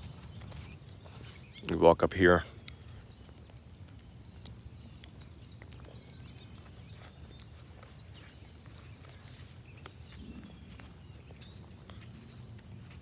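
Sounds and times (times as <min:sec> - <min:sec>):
footsteps on ground: 0:00.0 - 0:04.0, 0:05.6 - 0:13.0
bird chirps: 0:00.0 - 0:12.5.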